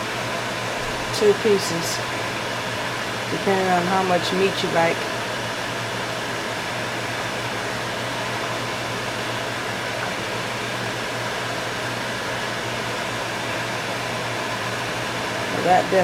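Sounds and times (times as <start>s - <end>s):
kitchen fan whirring: 0.0s - 16.0s.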